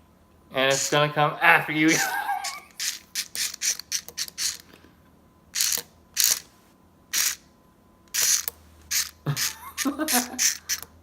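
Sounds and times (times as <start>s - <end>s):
toy motor and gears whirring: 0.7s - 1.0s, 1.9s - 4.8s, 5.5s - 7.5s, 8.1s - 11.0s.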